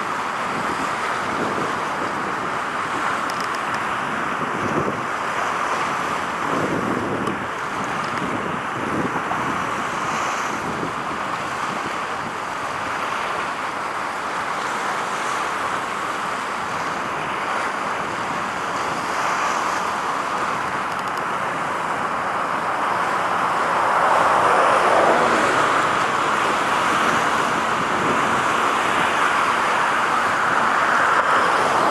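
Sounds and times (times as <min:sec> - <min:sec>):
outdoor rushing noise: 0:21.6 - 0:31.9.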